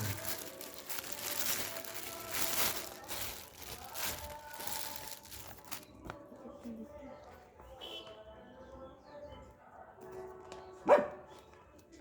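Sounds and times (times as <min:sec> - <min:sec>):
plastic wrapping crinkling: 0:00.0 - 0:06.2.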